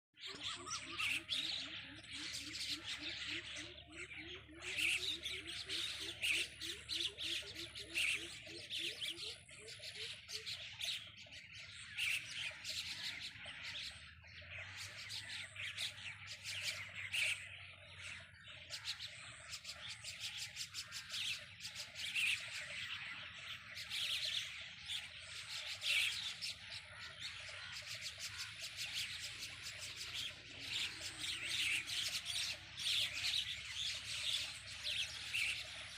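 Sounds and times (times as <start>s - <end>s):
birds chirping and squawking: 0.2s - 35.9s.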